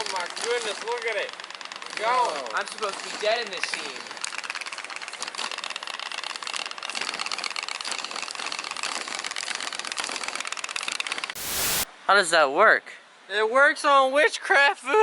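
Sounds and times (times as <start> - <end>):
toy steam boat engine popping: 0.0 - 11.2.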